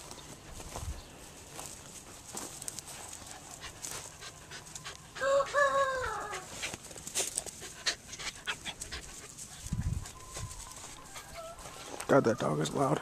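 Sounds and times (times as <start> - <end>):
dog howling: 5.2 - 6.5.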